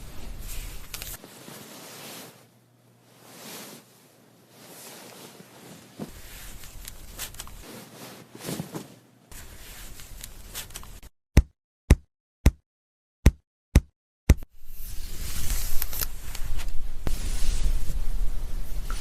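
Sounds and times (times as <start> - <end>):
wet hair rustling: 4.6 - 8.7.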